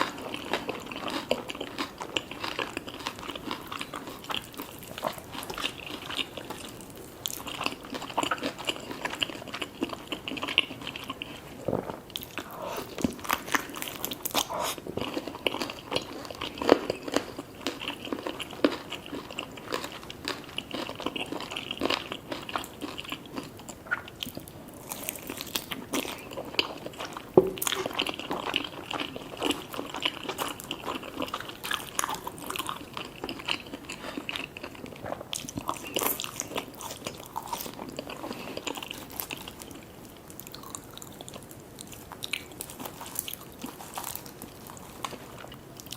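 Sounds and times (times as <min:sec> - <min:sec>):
chewing and crunching food: 0:00.0 - 0:45.9
wet mouth sounds: 0:11.1 - 0:13.2, 0:23.7 - 0:24.5.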